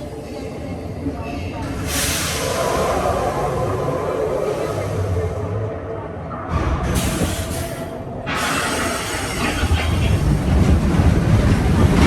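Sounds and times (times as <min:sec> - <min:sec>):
hiss: 0:01.9 - 0:03.8
roller coaster wheels rattling on rail: 0:06.5 - 0:12.0.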